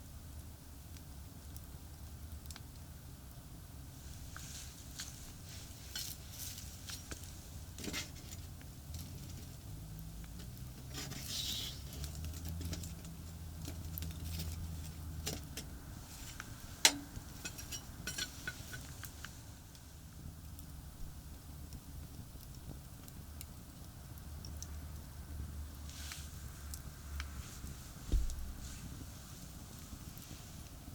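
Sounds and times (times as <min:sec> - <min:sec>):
expressway traffic rumble: 0:04.0 - 0:20.4
small clicks and knocks: 0:05.9 - 0:19.8
sharp crack: 0:15.2 - 0:18.9.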